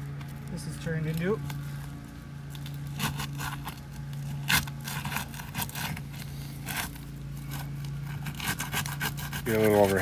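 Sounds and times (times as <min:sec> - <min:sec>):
tool scraping roof shingles: 0:02.9 - 0:10.0.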